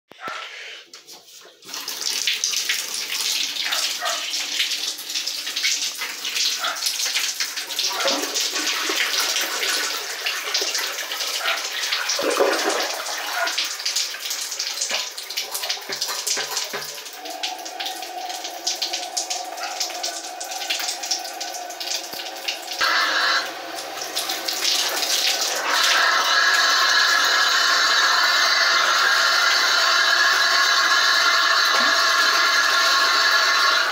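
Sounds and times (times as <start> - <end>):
air hissing from shower spout: 16.0 - 33.9.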